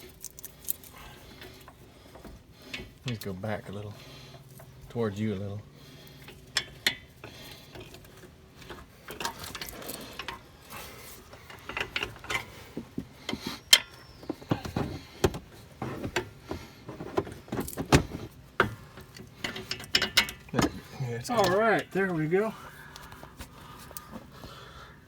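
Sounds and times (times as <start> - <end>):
metal bolt clinking and knocking: 1.4 - 10.5, 11.4 - 21.9.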